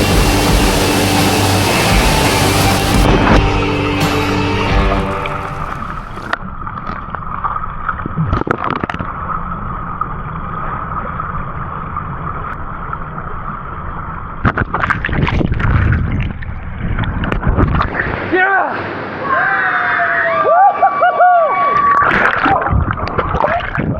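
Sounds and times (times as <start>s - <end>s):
water rushing and splashing: 0.0s - 6.4s, 15.2s - 21.0s.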